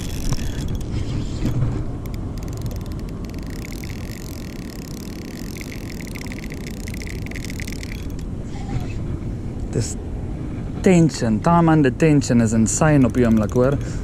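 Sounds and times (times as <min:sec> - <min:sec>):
fishing reel drag clicking: 0:00.0 - 0:08.3, 0:12.8 - 0:14.0.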